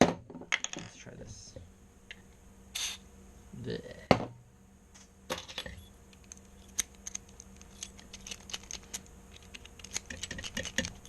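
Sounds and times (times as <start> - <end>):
lock picks clicking in lock: 6.2 - 10.3.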